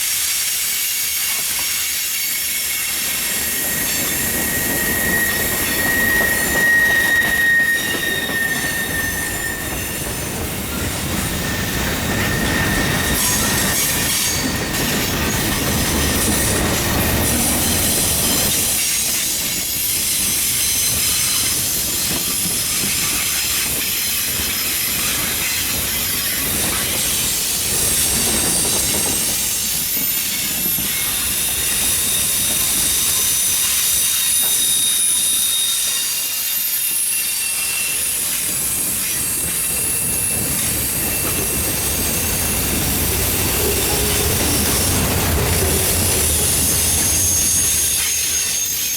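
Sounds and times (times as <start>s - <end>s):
freight train cars clattering: 0.2s - 48.9s
high-pitched wheel squeal: 2.2s - 18.9s, 27.9s - 48.9s.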